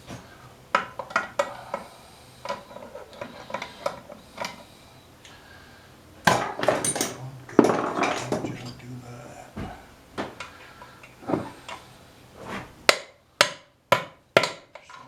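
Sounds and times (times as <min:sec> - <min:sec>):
hand tools tapping on metal: 0:00.1 - 0:05.4.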